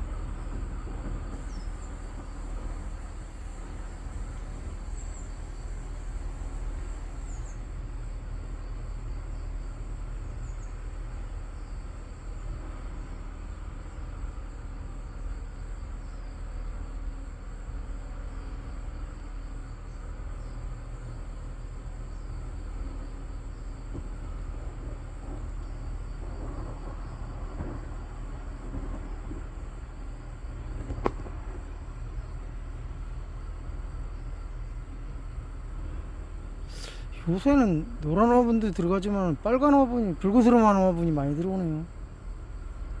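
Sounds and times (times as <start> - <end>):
high insect drone: 0.0 - 43.0
steady low rumble: 24.2 - 43.0.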